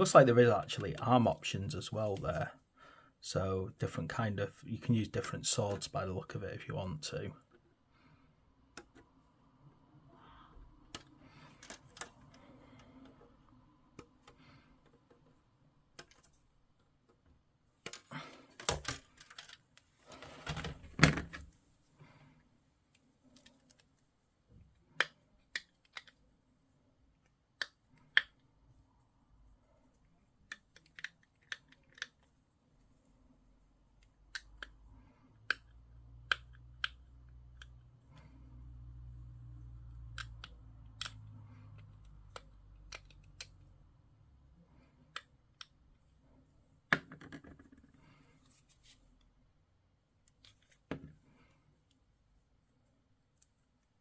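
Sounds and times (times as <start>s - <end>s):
plastic parts clicking and snipping: 10.8s - 21.5s, 24.6s - 26.3s, 27.2s - 28.5s, 30.3s - 32.4s, 34.0s - 38.3s, 39.8s - 43.8s.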